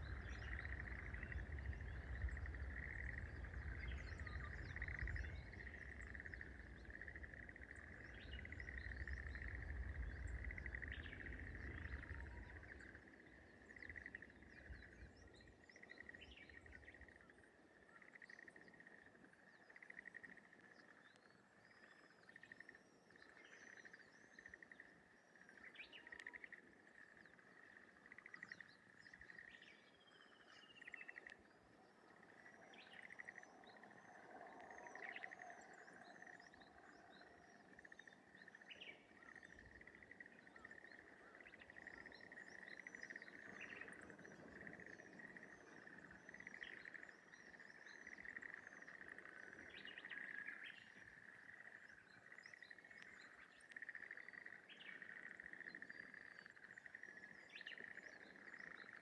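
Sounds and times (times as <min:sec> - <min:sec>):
small birds chirping: 0:00.0 - 0:17.2.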